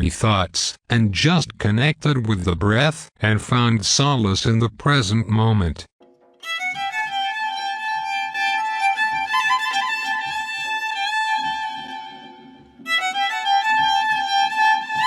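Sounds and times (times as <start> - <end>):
soft pulsing beat: 6.4 - 15.0
violin melody with vibrato: 6.4 - 15.0.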